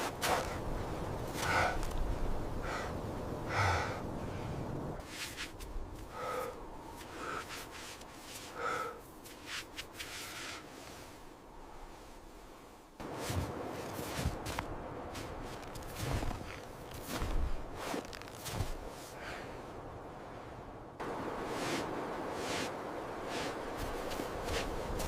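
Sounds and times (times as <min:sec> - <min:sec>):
person breathing hard: 0:02.6 - 0:04.7, 0:06.0 - 0:07.7, 0:08.4 - 0:09.1
steady rushing noise: 0:18.7 - 0:25.0.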